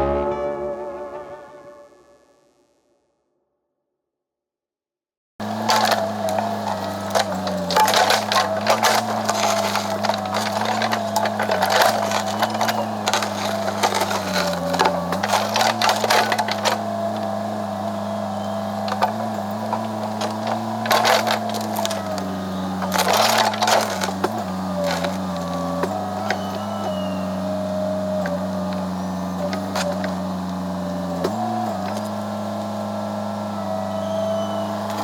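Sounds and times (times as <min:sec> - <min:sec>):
wood cracking and snapping: 0:05.4 - 0:32.2
machine engine running: 0:05.4 - 0:35.0.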